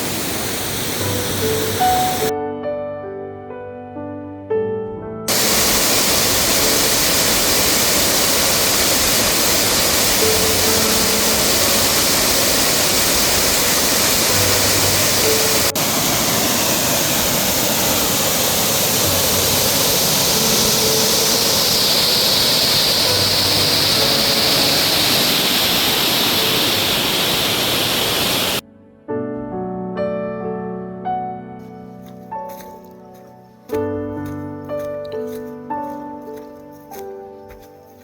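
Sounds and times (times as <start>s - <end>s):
waterfall rushing: 0.0s - 2.3s, 5.3s - 28.6s.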